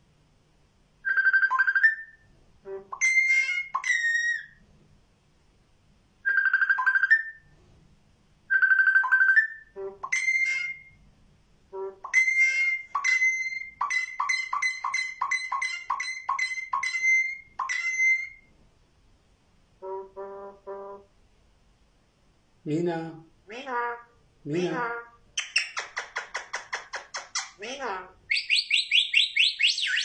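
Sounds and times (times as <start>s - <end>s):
bird whistling ringtone notes: 1.0s - 2.2s, 2.9s - 4.5s, 6.2s - 7.5s, 8.5s - 11.0s, 12.0s - 18.5s, 28.3s - 30.0s.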